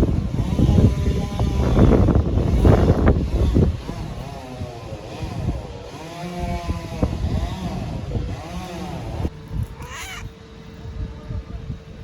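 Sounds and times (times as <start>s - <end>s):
cat meowing: 9.8s - 10.3s.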